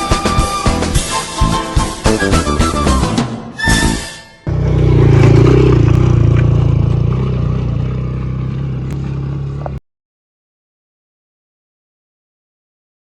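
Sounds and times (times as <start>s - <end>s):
vehicle engine rumbling: 4.5s - 9.8s.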